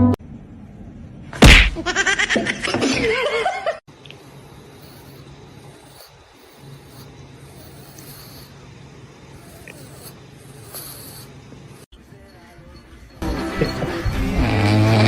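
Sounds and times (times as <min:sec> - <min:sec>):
sharp slap: 0:01.4 - 0:01.8
pulsing laughter: 0:13.2 - 0:14.6.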